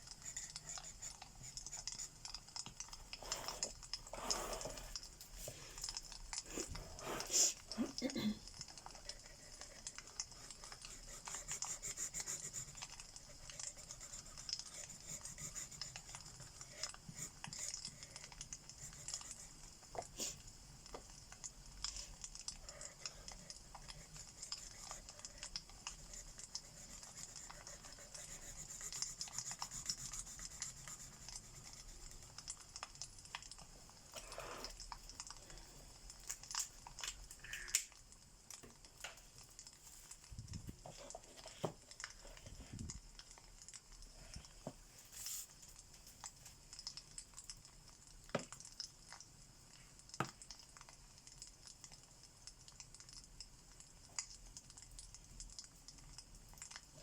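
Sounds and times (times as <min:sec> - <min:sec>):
crackling fireplace: 0:00.0 - 0:57.0
marker scratching on paper: 0:03.2 - 0:05.0, 0:10.4 - 0:16.0, 0:26.0 - 0:31.8.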